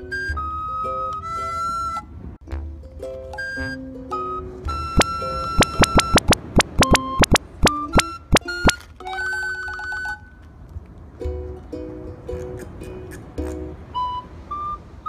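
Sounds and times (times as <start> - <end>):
short pitched notes: 4.6 - 8.8
sharp dry percussive clacks: 5.0 - 8.8.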